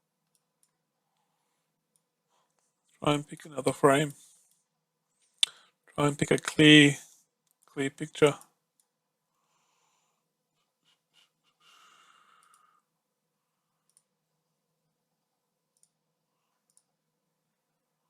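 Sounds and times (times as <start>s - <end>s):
faint computer clicks: 12.3s - 12.8s, 13.8s - 14.2s, 16.6s - 17.0s.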